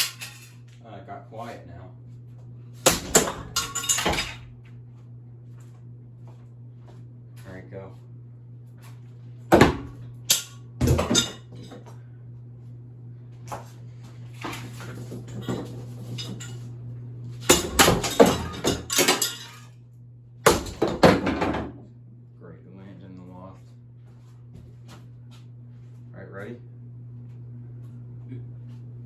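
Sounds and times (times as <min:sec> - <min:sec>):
low motor hum: 0:00.0 - 0:29.0
metallic clangs and crashes: 0:02.9 - 0:04.4, 0:17.5 - 0:19.7.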